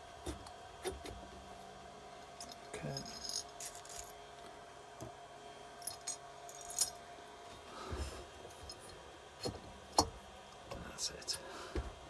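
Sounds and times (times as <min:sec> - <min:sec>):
metal tools clinking: 0:02.4 - 0:04.2, 0:05.8 - 0:07.0.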